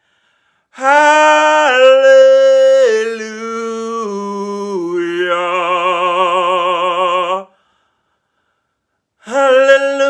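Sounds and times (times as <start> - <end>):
person singing unaccompanied: 0.8 - 7.5, 9.2 - 10.0.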